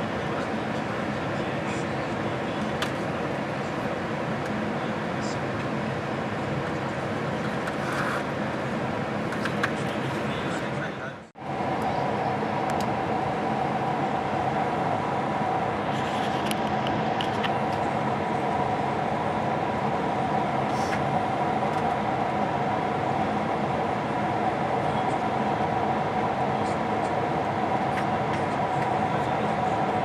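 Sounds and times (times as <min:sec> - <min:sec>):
airliner cabin hum: 0:00.0 - 0:30.0.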